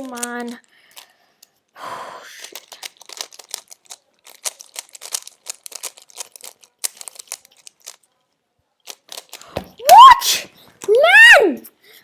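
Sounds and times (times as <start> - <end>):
puzzle cube plastic clicks: 0.0 - 1.6, 2.4 - 8.2, 8.8 - 9.9.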